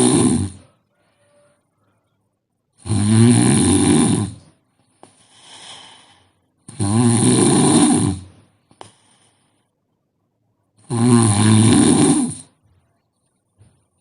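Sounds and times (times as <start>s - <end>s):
woman snoring: 0.0s - 0.7s, 2.8s - 9.4s, 10.8s - 12.6s
quiet breath: 0.6s - 2.4s, 4.4s - 6.7s, 8.3s - 10.0s.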